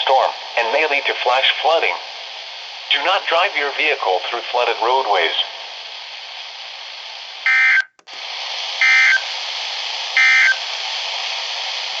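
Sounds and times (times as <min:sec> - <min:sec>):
radio hiss: 0:00.0 - 0:12.0
digital data tone bursts: 0:07.5 - 0:07.9, 0:08.8 - 0:09.2, 0:10.2 - 0:10.6.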